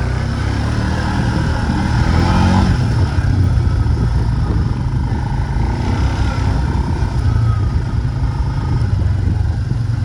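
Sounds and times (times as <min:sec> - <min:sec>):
vehicle engine running steadily: 0:00.0 - 0:10.0.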